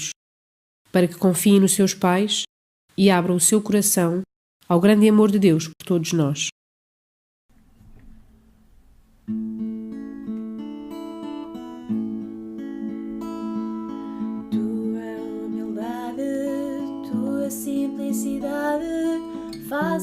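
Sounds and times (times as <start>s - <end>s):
acoustic guitar chords: 8.6s - 20.0s
person singing: 14.0s - 20.0s.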